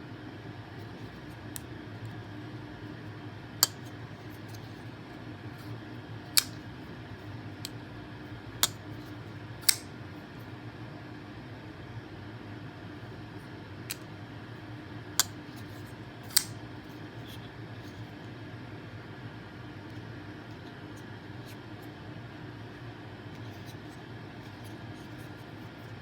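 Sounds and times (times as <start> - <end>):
steady low hum: 0.0 - 26.0
pocket knife metallic clicks: 6.4 - 6.6, 9.6 - 9.8, 16.3 - 16.6.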